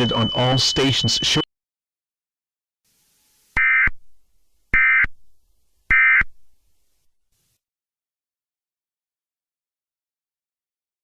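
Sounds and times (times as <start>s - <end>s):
digital data warble bursts: 0.0s - 1.4s.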